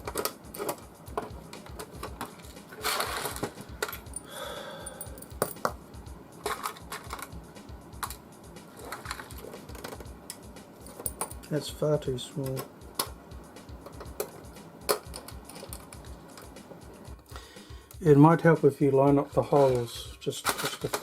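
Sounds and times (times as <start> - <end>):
metal screws clicking and clinking: 0.0 - 5.7, 10.8 - 11.5.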